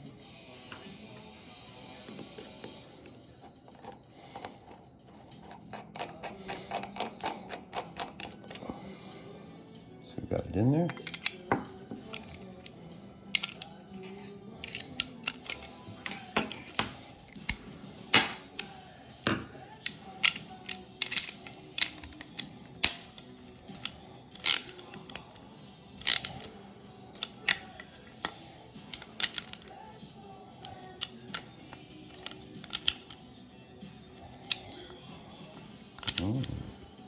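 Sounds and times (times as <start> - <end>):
faint background music: 0.0 - 37.0
metallic tool clicks and taps: 5.4 - 8.6, 10.9 - 25.4, 26.0 - 26.5, 27.2 - 29.7, 30.6 - 33.2, 34.4 - 36.3.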